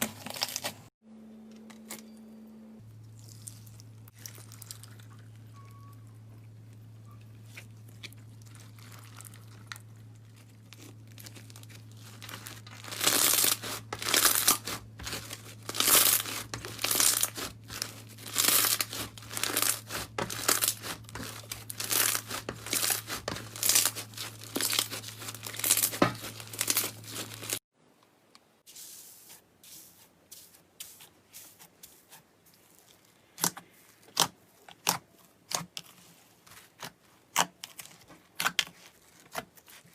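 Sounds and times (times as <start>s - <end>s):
slime crackling and tearing: 0.0s - 0.9s, 7.4s - 27.6s, 32.6s - 39.9s
slime squishing: 3.1s - 27.6s, 29.1s - 39.9s.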